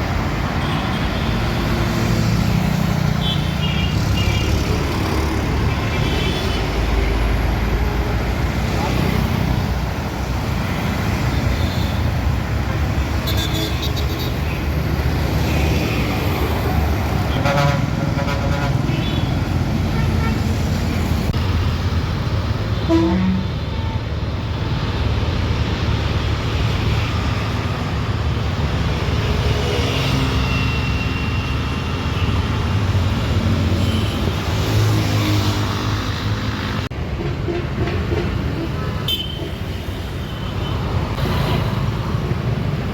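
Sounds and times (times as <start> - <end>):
traffic engines rumbling: 0.0 - 42.9
vehicle horns tooting: 17.3 - 19.3, 22.8 - 23.5.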